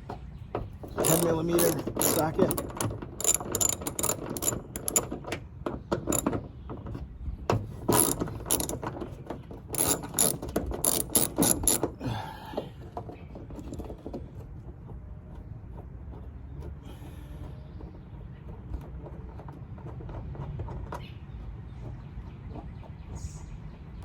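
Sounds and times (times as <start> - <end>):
ratchet wrench clicking: 1.0 - 5.2, 7.9 - 8.8, 9.7 - 12.0.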